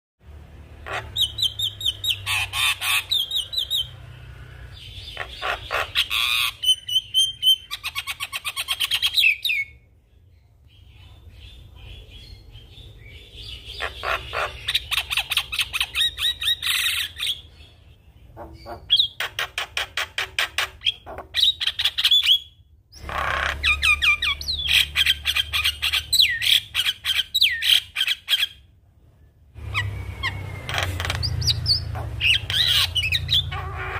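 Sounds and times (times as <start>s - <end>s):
myna chattering and squawking: 0.8s - 4.1s, 4.7s - 9.3s, 13.7s - 17.4s, 18.3s - 28.5s, 29.6s - 33.9s.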